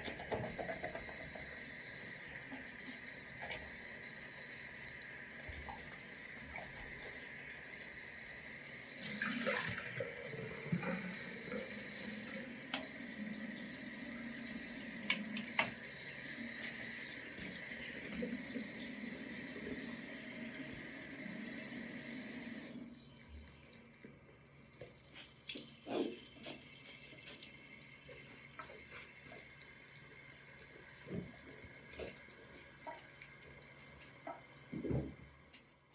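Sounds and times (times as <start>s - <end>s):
tap water splashing: 31.0s - 32.2s, 34.0s - 35.7s.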